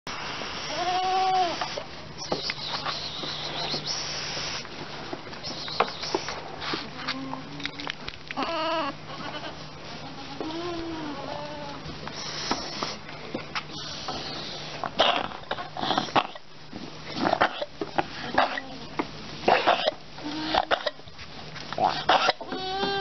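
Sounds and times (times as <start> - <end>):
goat bleating: 0.7 - 1.8, 8.4 - 11.8, 21.8 - 23.0
goat coughing: 15.0 - 16.4, 17.2 - 18.6, 19.4 - 21.0, 21.8 - 23.0.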